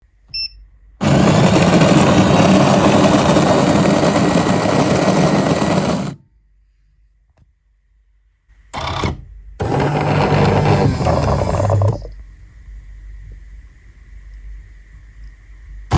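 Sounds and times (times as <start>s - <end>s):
coffee grinder grinding beans: 1.0s - 6.2s, 9.6s - 12.1s.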